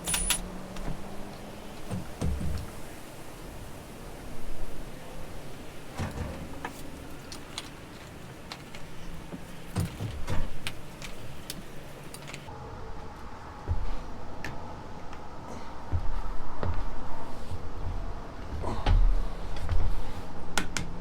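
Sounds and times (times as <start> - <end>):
metal tools clinking and knocking: 0.0 - 0.8, 6.6 - 12.5.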